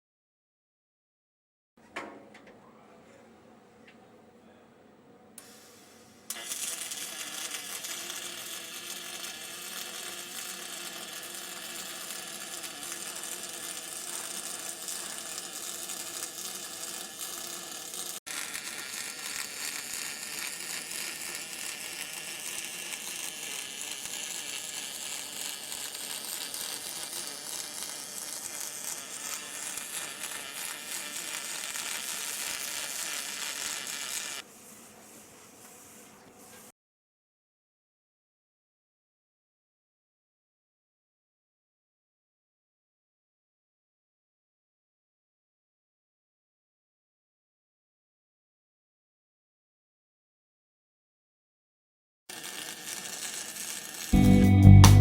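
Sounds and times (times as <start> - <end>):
welding arc sizzling buzz: 5.4 - 36.7, 52.3 - 55.0.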